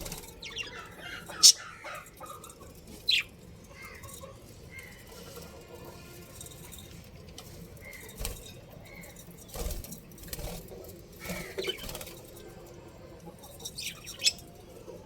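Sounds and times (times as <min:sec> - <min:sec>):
budgies chirping: 0:00.0 - 0:05.0, 0:11.2 - 0:12.1, 0:13.6 - 0:14.8.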